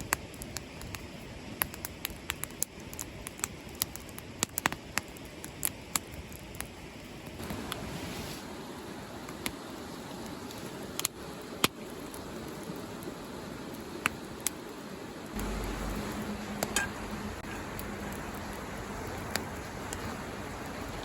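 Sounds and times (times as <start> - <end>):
campfire crackling: 0.0 - 21.0
low steady hum: 15.3 - 21.0.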